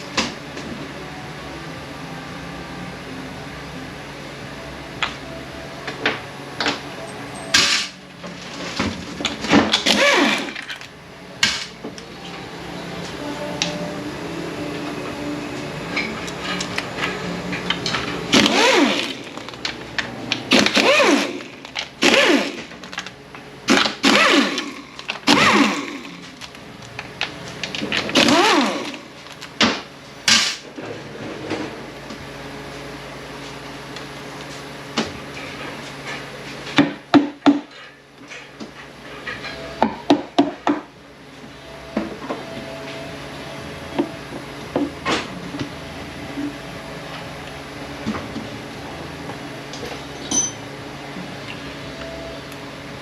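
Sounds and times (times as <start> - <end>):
power ratchet whirring: 9.7 - 10.9, 16.4 - 23.1, 23.7 - 26.4, 27.8 - 29.2
metallic knocks and clinks: 50.2 - 50.6.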